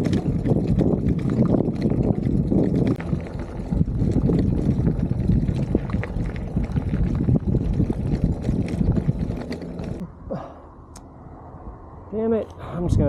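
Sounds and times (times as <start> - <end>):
bicycle tyres rolling on gravel: 0.0 - 10.0
wind buffeting microphone: 0.0 - 10.1, 11.9 - 13.0.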